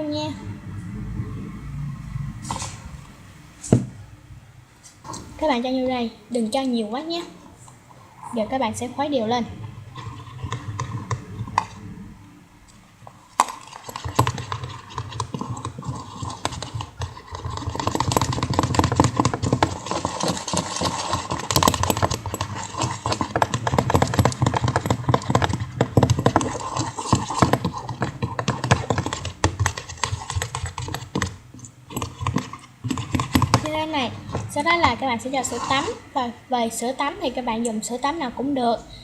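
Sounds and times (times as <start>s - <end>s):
stirrer scraping a container: 7.6s - 12.1s, 13.0s - 36.3s.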